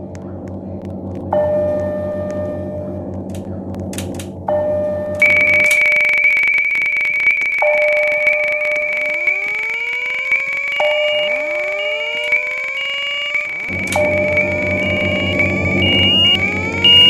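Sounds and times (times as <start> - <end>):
fire alarm tones: 4.5 - 17.0
short high beeps: 5.2 - 17.0.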